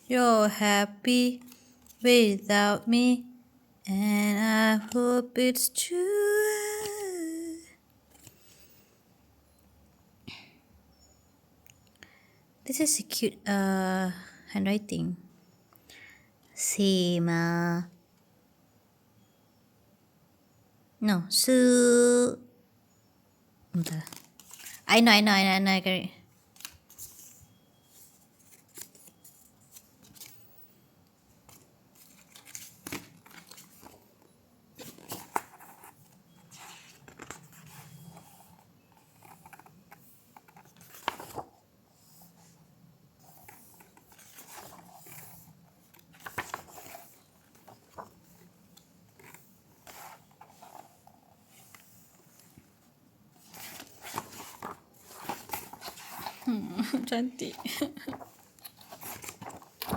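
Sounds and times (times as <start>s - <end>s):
paper packaging rustling: 23.9s - 25.1s, 26.5s - 30.5s, 31.3s - 42.6s, 43.2s - 59.9s.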